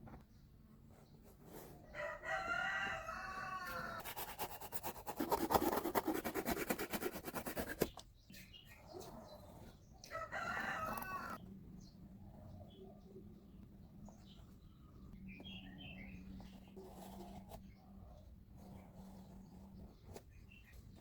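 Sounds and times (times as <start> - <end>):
rooster crowing: 1.9 - 4.0, 10.1 - 11.4.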